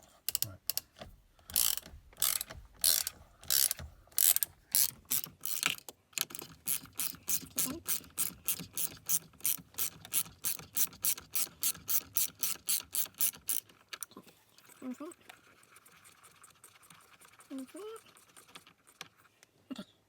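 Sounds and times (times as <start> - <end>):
ratchet wrench clicking: 0.3 - 13.7.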